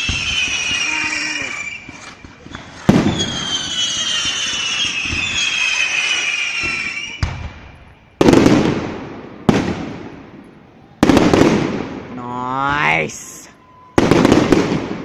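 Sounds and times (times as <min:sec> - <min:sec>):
firework bursts: 0:00.0 - 0:07.6
whistling fireworks: 0:00.0 - 0:12.0, 0:12.7 - 0:15.0.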